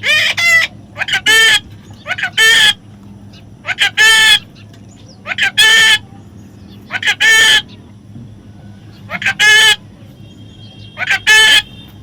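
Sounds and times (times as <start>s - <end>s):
parrot squawking: 0.0s - 6.1s, 6.8s - 7.8s, 9.1s - 9.8s, 10.8s - 11.8s.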